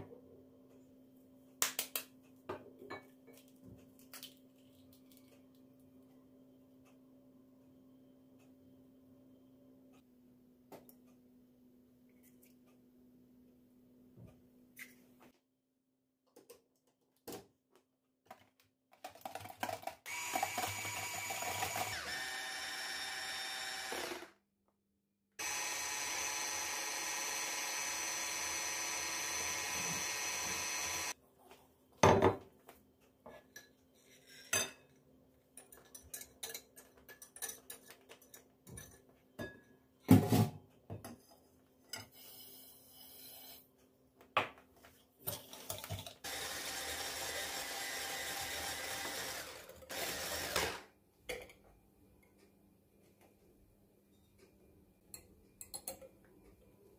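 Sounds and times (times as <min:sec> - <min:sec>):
kitchen appliance motor running: 0:20.1 - 0:24.4, 0:25.4 - 0:31.2, 0:46.2 - 0:50.8
utensils and dishes clattering: 0:35.6 - 0:40.5.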